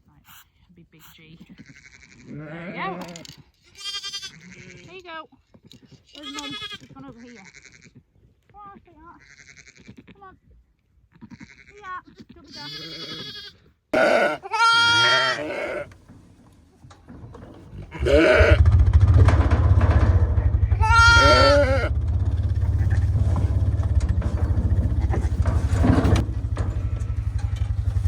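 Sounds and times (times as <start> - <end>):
sheep bleating: 1.6 - 4.9, 6.2 - 7.9, 9.2 - 10.1, 11.1 - 16.0, 17.9 - 18.6, 20.6 - 23.5
quad bike engine running: 18.0 - 28.0.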